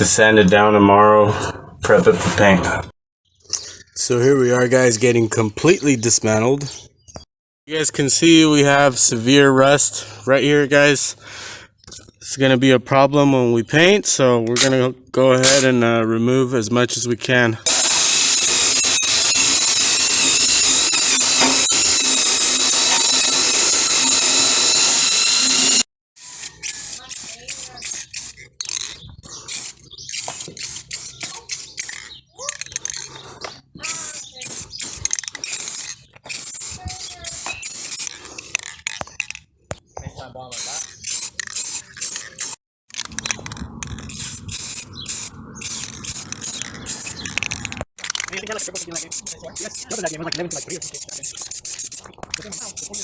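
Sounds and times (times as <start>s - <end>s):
high-pitched power tool whine: 17.7s - 25.9s.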